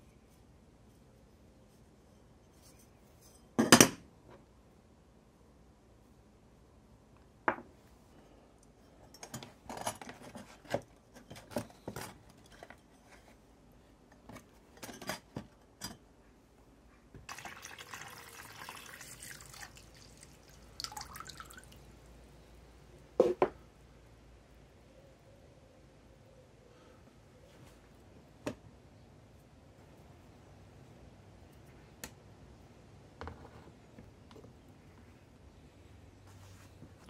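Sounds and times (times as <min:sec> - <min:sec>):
liquid pouring into container: 0:17.2 - 0:21.9.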